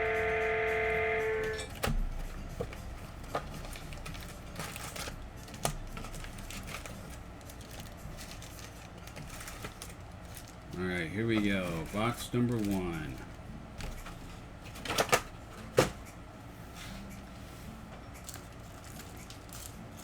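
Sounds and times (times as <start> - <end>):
held musical chord: 0.0 - 1.7.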